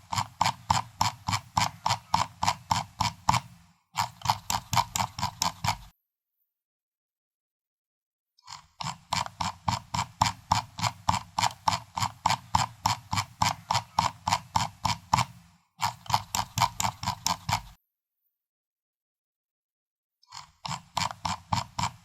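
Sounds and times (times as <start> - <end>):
mouse scroll wheel clicking: 0.0 - 6.0, 8.4 - 17.8, 20.3 - 22.0.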